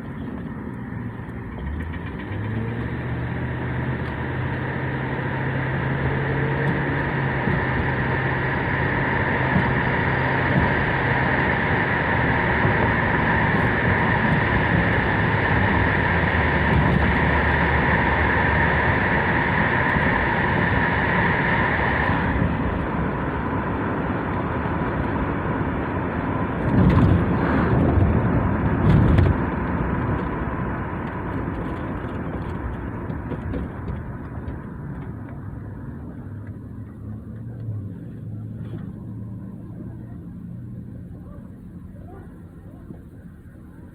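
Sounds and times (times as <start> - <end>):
car engine hum: 0.0 - 43.9
high whine: 4.0 - 35.3.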